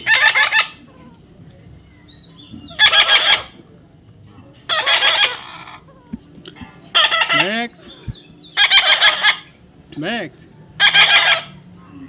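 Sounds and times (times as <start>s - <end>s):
parrot squawking: 0.0s - 0.9s, 2.7s - 3.6s, 4.7s - 5.9s, 6.9s - 9.6s, 10.8s - 11.7s.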